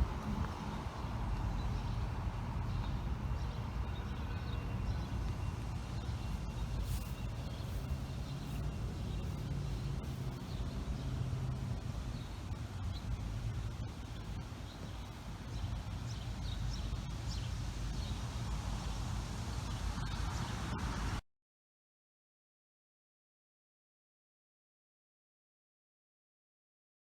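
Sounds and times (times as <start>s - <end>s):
low rumble: 0.0s - 3.1s.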